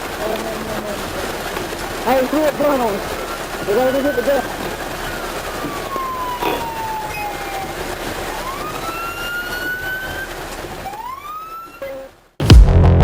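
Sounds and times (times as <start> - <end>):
road noise: 0.0 - 12.4
police siren wailing: 0.6 - 12.2
electronic music with heavy beat: 12.4 - 13.0.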